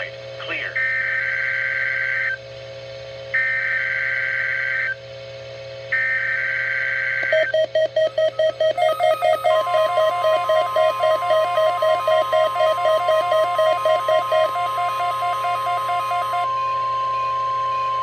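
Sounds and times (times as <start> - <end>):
warbling digital data tones: 8.1 - 16.5
steady electronic tone: 8.1 - 18.0
fast electronic pulsing: 8.2 - 16.5.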